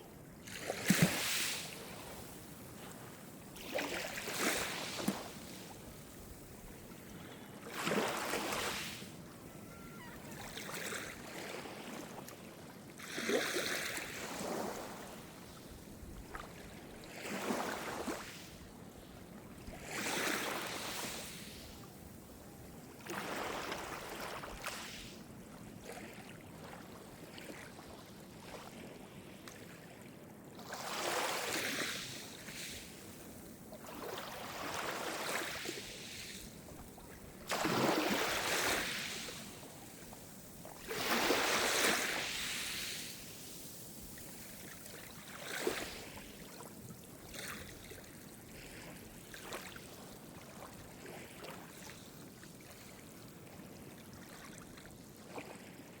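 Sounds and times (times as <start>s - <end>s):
waves breaking on shore: 0.4s - 12.3s, 13.0s - 15.7s, 16.3s - 18.7s, 19.6s - 21.9s, 33.8s - 51.8s.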